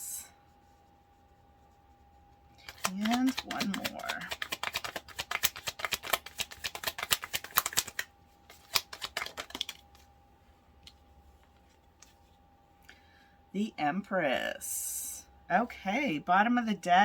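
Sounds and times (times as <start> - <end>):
cards being shuffled: 2.5 - 10.1.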